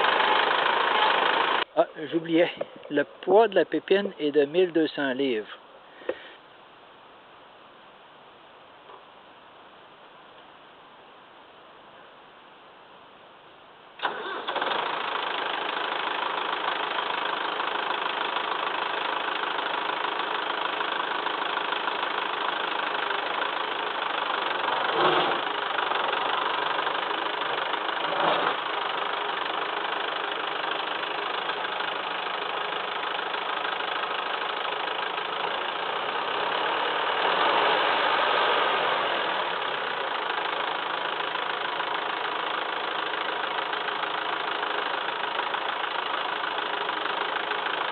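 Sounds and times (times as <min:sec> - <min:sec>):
tractor diesel engine running: 0:00.0 - 0:03.0, 0:14.0 - 0:47.9.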